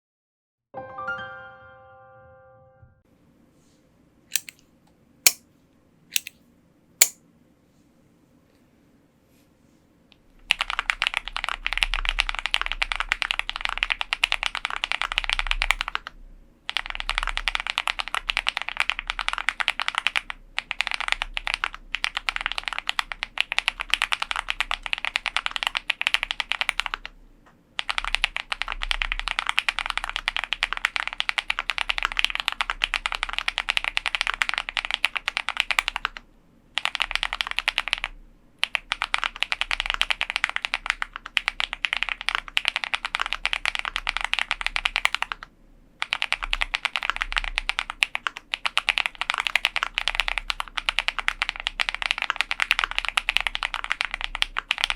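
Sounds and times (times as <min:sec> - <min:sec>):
mechanical keyboard typing: 0:04.3 - 0:04.6, 0:10.4 - 0:16.1, 0:16.7 - 0:27.1, 0:27.8 - 0:36.2, 0:36.8 - 0:54.9.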